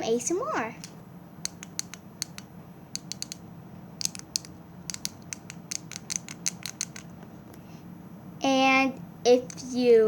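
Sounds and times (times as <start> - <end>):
push buttons clicking: 0.8 - 3.4, 4.0 - 7.1.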